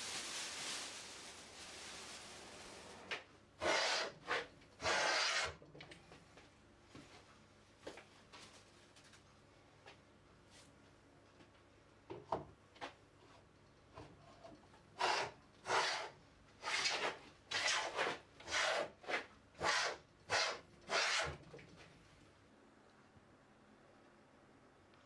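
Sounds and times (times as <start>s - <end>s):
hand tool scraping wood: 3.6s - 5.6s, 15.0s - 21.4s.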